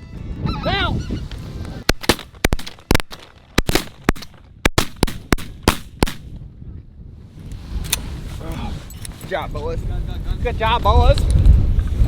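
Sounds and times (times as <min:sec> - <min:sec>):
wind noise: 0:00.0 - 0:12.0
shotgun shots: 0:01.8 - 0:06.3.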